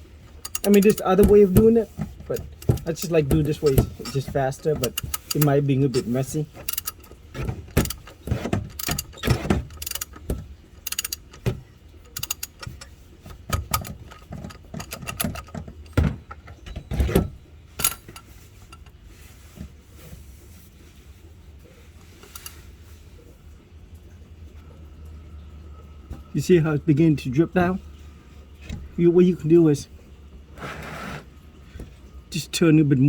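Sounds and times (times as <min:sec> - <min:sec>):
wrench clicking on metal: 0:00.4 - 0:11.5, 0:12.1 - 0:12.9, 0:13.5 - 0:16.0, 0:17.8 - 0:18.9, 0:22.2 - 0:22.6.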